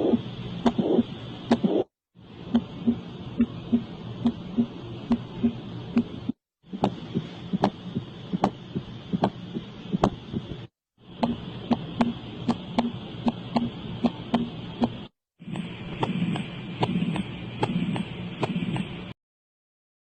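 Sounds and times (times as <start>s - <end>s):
clicking heartbeat: 2.5s - 10.6s.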